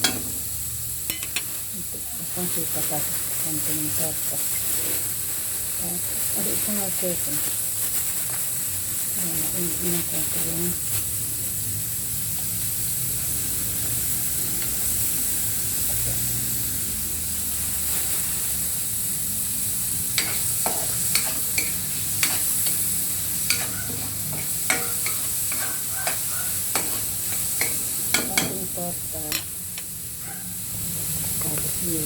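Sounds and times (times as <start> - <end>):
food sizzling in a frying pan: 0.0 - 32.0
utensil scraping a pan: 20.1 - 28.7.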